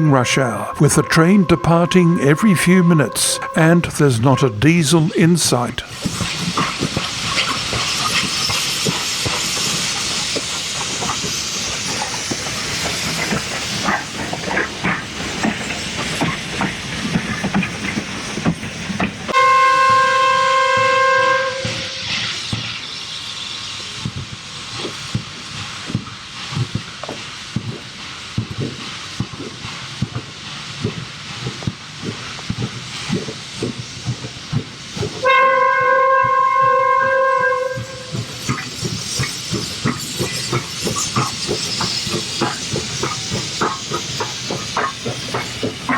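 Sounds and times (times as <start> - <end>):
steam whistle blast: 0.0 - 5.5, 19.3 - 22.2, 35.2 - 38.4
locomotive steam hissing: 0.0 - 45.9
train rhythmic beats and rail clatter: 0.0 - 45.9.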